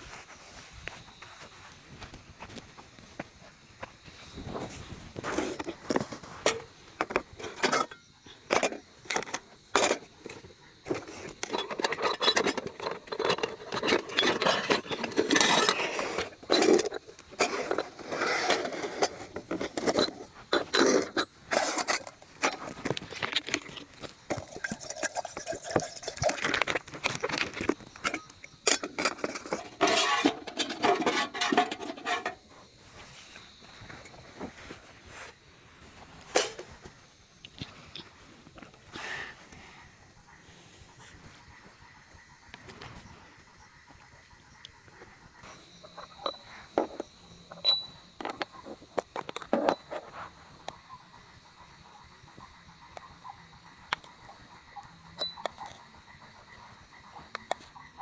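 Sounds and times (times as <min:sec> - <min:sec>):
handling clicks and knocks: 0:05.3 - 0:32.4.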